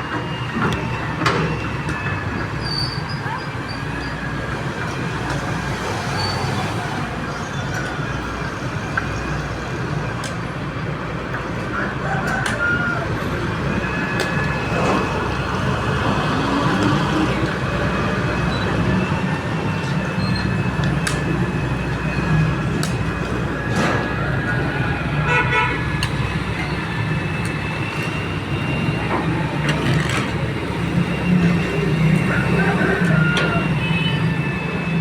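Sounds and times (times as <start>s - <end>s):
engine running: 0.0s - 35.0s
street traffic noise: 0.0s - 35.0s
vehicle horns tooting: 25.2s - 26.0s, 32.2s - 34.7s.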